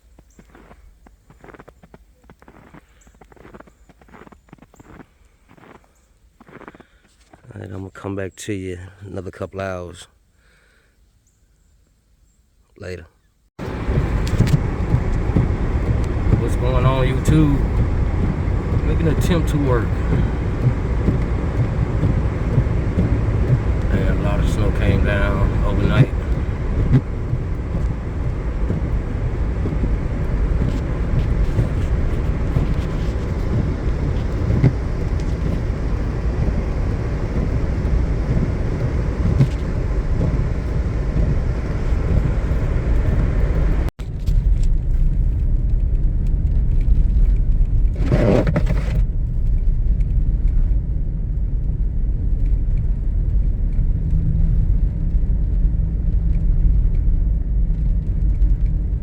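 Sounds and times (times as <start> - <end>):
road and engine rumble: 13.6 - 59.0.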